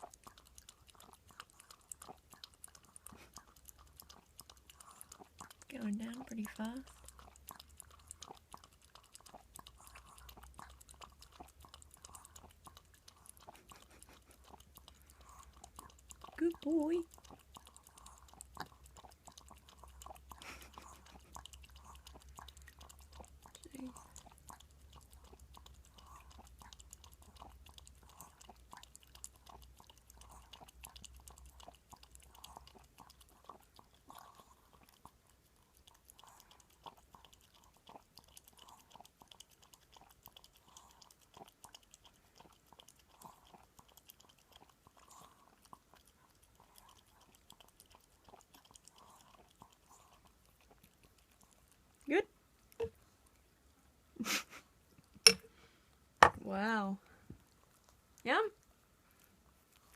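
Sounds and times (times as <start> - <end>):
dog lapping milk: 0.0 - 53.6.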